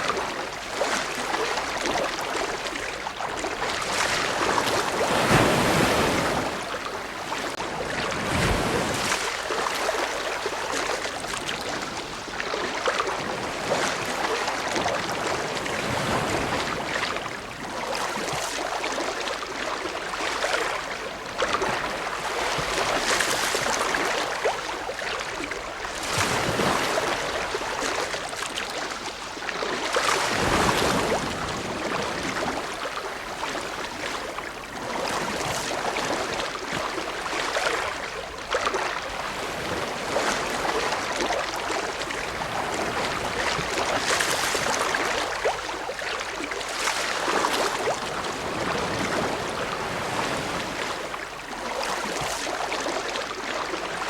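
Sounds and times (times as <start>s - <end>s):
ocean waves breaking: 3.4s - 12.3s, 25.4s - 28.6s.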